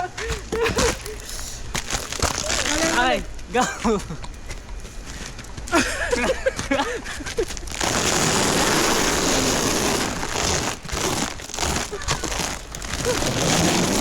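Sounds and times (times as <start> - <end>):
sled scraping over snow: 4.9 - 14.0.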